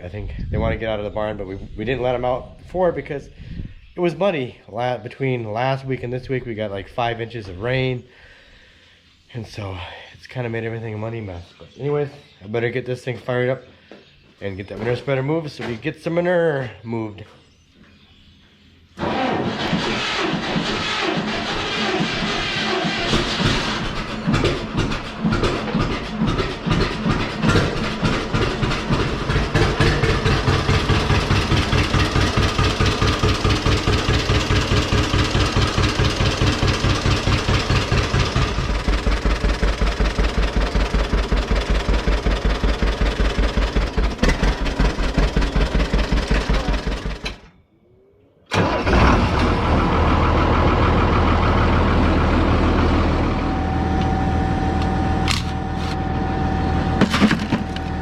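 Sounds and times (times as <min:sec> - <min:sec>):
tractor engine putting: 0:19.0 - 0:47.5, 0:48.5 - 0:58.0.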